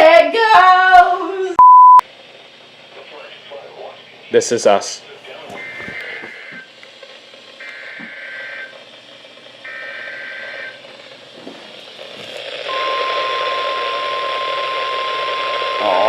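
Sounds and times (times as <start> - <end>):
radio hiss: 2.1 - 16.0
steady warning alarm tone: 5.4 - 6.7, 7.6 - 8.8, 9.6 - 10.9, 12.5 - 16.0.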